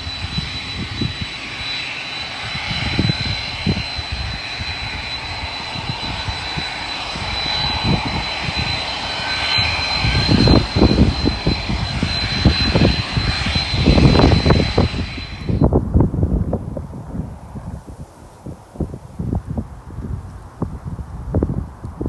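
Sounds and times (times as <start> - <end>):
high steady whine: 0.0 - 16.4
aircraft engines running: 0.0 - 22.0
wind buffeting microphone: 0.0 - 22.0.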